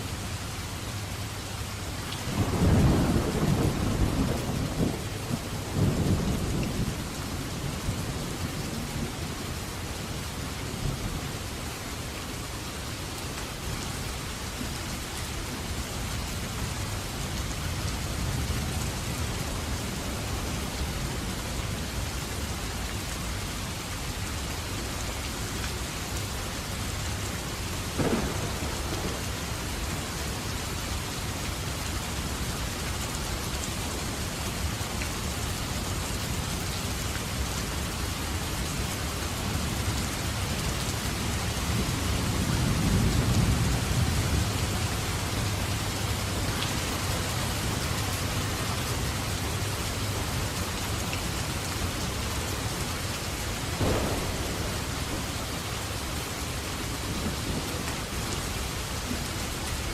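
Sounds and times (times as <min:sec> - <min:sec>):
steady rain: 0:00.0 - 0:59.9
thunder rumbling: 0:27.9 - 0:30.5, 0:53.7 - 0:59.2
sharp thunder crack: 0:28.0 - 0:29.2, 0:53.8 - 0:55.8.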